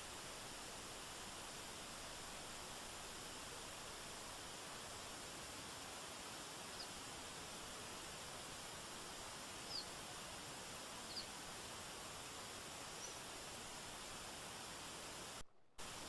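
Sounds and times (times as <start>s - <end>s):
forest stream rushing: 0.0s - 16.0s
bird chirping: 9.6s - 10.0s, 11.0s - 11.4s, 12.9s - 13.3s.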